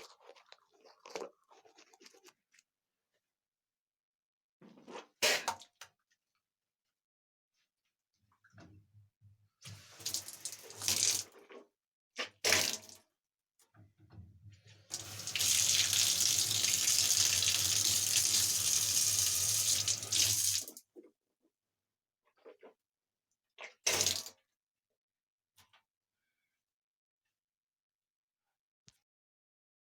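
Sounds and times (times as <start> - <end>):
short bursts of water: 9.7 - 11.3, 14.9 - 20.8
tap running into a sink: 14.9 - 20.8.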